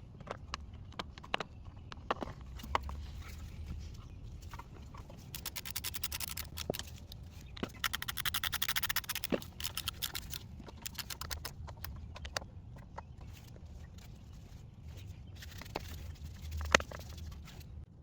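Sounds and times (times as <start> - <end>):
hand tool clicks: 5.3 - 12.4
sharp ticks: 5.3 - 12.4.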